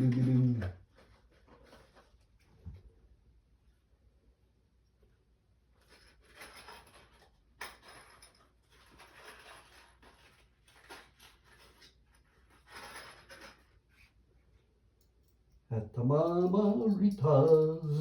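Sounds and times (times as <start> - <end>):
faint rustling and scraping: 0.0 - 3.1, 5.7 - 14.9.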